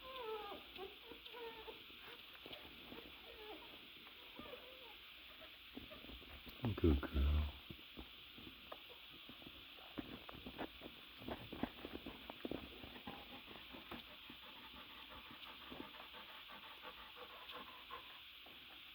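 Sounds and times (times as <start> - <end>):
puppies squeaking: 0.0 - 6.1.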